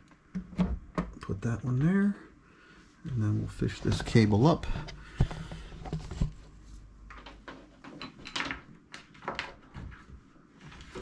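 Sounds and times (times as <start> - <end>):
cable handling knocks and rustles: 3.8 - 11.0.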